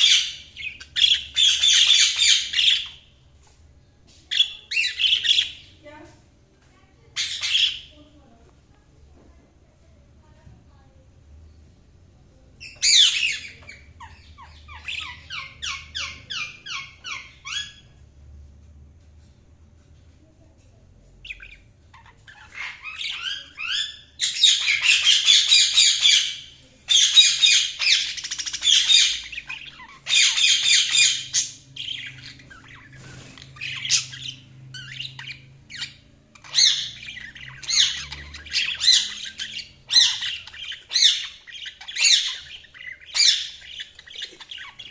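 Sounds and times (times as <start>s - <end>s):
budgerigars chirping and chattering: 0.0s - 3.5s, 4.3s - 6.0s, 7.1s - 8.1s, 12.6s - 18.0s, 21.2s - 44.9s.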